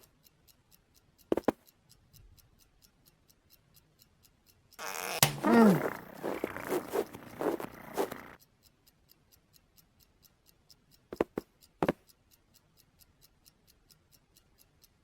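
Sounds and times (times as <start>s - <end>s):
fast even ticking: 4.8s - 8.4s
sharp clicks: 4.8s - 8.4s.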